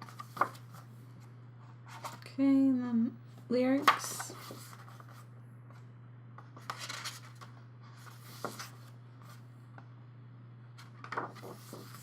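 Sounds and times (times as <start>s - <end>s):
paper pages rustling: 0.0s - 0.9s, 1.9s - 2.2s, 3.8s - 5.3s, 6.6s - 9.4s, 10.8s - 12.0s.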